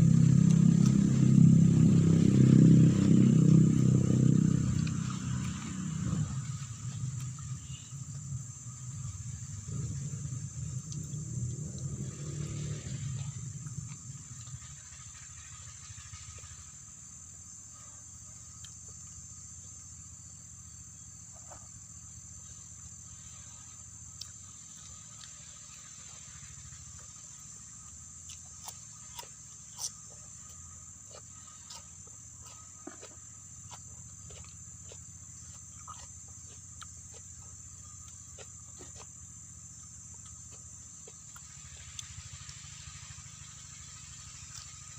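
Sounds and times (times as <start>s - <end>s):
low rumble: 0.0s - 16.9s
high-pitched insect drone: 0.0s - 44.9s
low steady hum: 0.0s - 44.9s.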